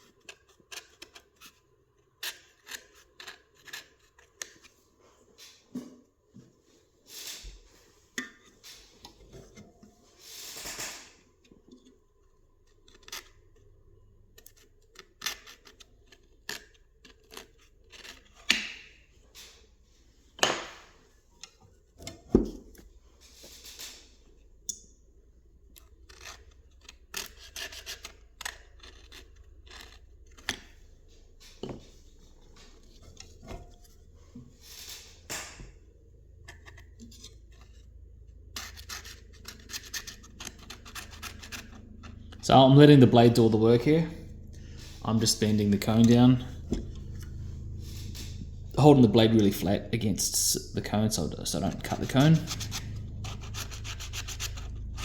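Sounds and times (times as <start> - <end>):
blade scraping foam residue: 50.8 - 55.0.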